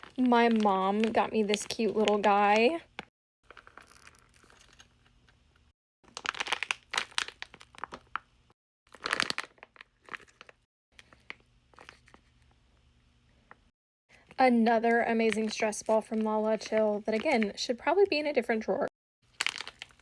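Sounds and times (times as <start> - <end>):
plastic bag crinkling: 0.0 - 5.1, 6.1 - 8.3, 8.9 - 12.4, 15.0 - 17.8, 19.2 - 20.0.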